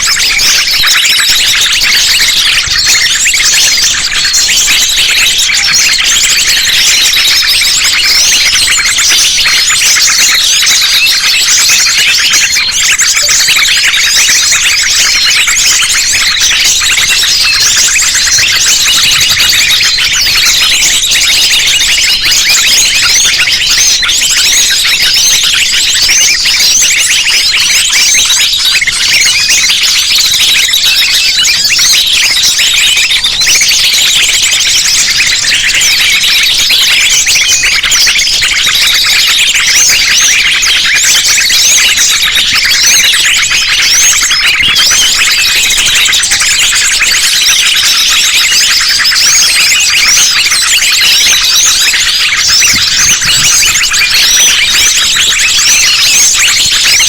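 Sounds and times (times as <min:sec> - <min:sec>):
small birds chirping and trilling: 0:00.0 - 0:57.0.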